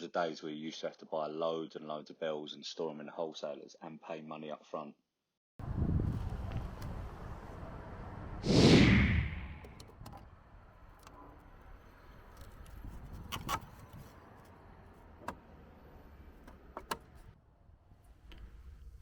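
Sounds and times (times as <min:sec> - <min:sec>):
loud whoosh: 0:08.4 - 0:09.7.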